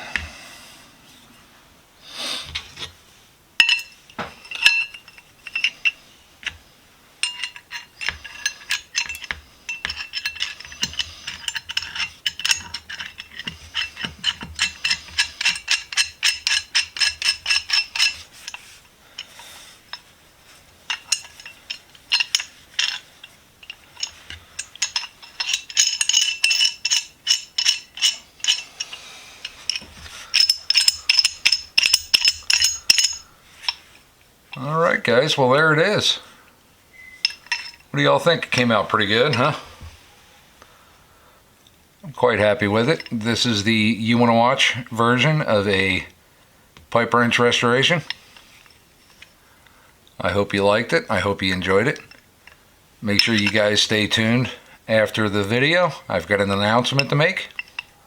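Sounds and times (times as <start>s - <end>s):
pipe wrench clicking: 7.2s - 18.6s, 20.9s - 33.8s.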